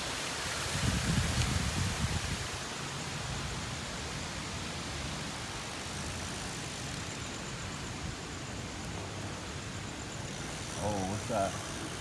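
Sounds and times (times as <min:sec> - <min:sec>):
street traffic passing: 0:10.1 - 0:12.0.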